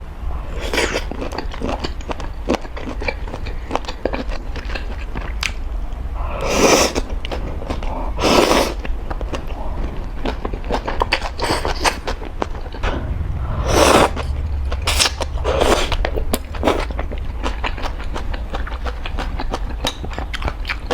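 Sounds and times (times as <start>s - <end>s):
wet chewing and smacking: 0.7s - 5.7s, 7.0s - 12.8s, 16.6s - 20.9s
noodle slurps: 8.2s - 8.8s, 11.3s - 12.0s.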